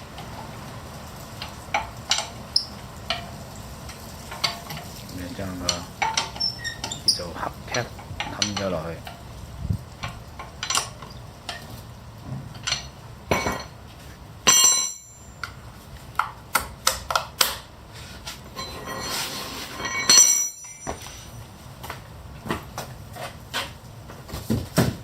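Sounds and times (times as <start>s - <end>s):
knocks and metallic clinks: 1.4s - 17.7s, 18.4s - 22.9s
ringing metal clanks: 5.6s - 9.2s, 10.0s - 11.7s, 12.4s - 13.8s, 14.4s - 15.7s, 18.5s - 21.5s.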